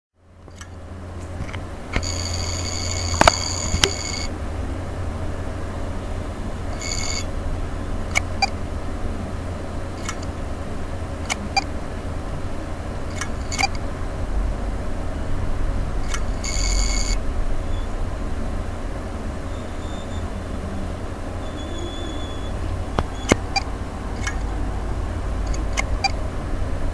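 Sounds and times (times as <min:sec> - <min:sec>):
steady low hum: 0:00.2 - 0:26.9
hard drive clicking: 0:00.4 - 0:04.3, 0:08.1 - 0:08.6, 0:10.0 - 0:10.4, 0:13.1 - 0:13.9, 0:16.0 - 0:17.2, 0:22.6 - 0:24.5, 0:25.4 - 0:26.2
high electronic beeps: 0:02.0 - 0:04.3, 0:06.7 - 0:07.3, 0:16.1 - 0:18.0, 0:19.4 - 0:24.4.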